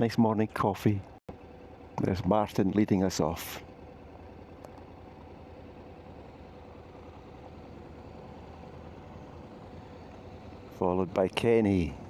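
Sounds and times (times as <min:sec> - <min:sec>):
motorcycle engines idling: 0:00.0 - 0:12.0.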